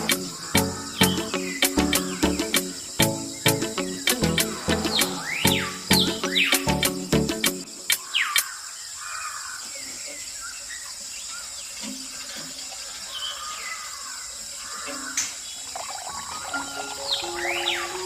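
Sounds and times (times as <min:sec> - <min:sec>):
water trickling and splashing: 0:10.6 - 0:18.0.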